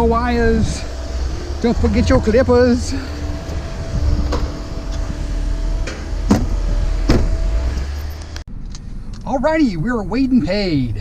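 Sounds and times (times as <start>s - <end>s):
motor vehicle running: 0.0s - 11.0s
sharp knocks: 5.8s - 7.5s.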